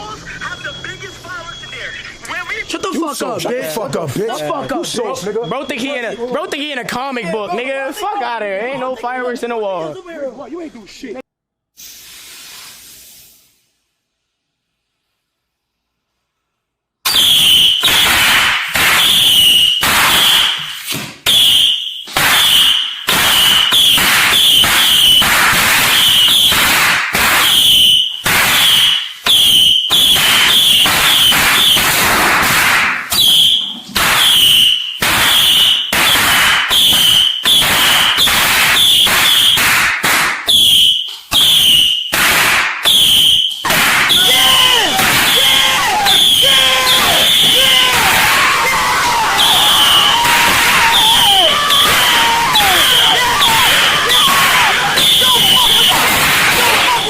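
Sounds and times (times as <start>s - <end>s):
fireworks bangs and crackles: 17.1s - 57.0s.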